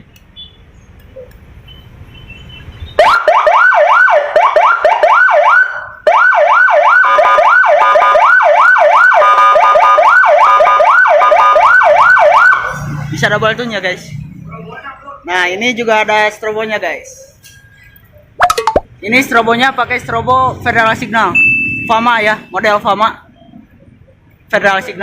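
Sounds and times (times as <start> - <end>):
siren wailing: 3.0 - 12.9.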